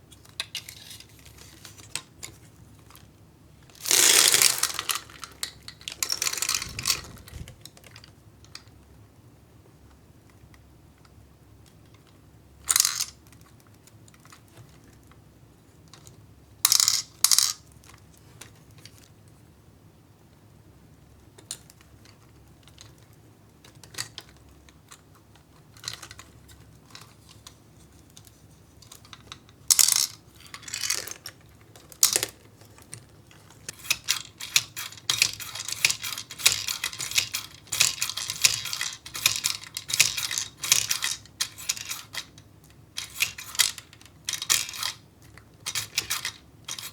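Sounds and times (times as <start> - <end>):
small hard pieces clattering on plastic: 3.7 - 7.6.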